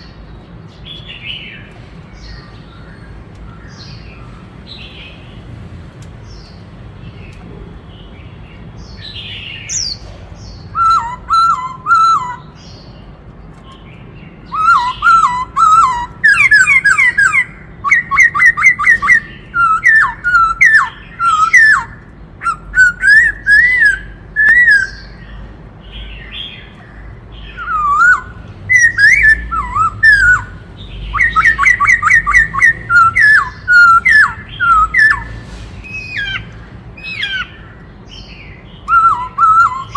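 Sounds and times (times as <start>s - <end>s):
bird singing whistled phrases: 10.7s - 12.8s, 14.4s - 25.2s, 27.4s - 37.6s, 38.2s - 39.9s.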